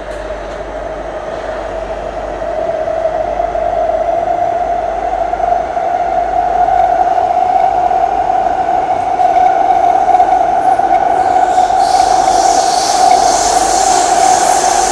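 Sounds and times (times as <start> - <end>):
train motor whine: 9.7 - 14.9
train rolling rumble: 9.8 - 14.9.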